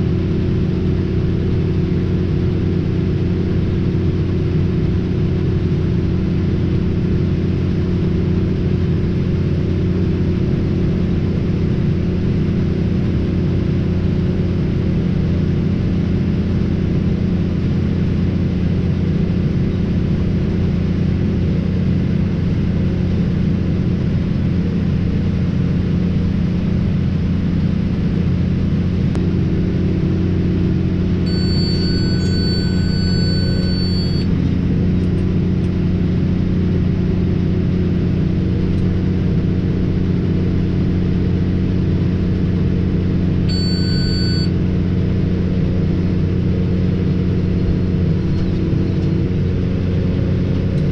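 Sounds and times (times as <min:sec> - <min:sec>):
high electronic warning tone: 0:31.3 - 0:34.3, 0:43.5 - 0:44.5
tractor engine droning: 0:31.3 - 0:35.6.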